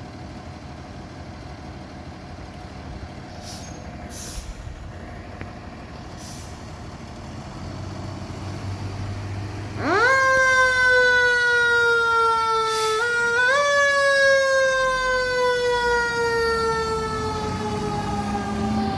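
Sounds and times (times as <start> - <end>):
fire truck engine pulling away: 0.0 - 18.9
electronic siren wailing: 9.8 - 18.9.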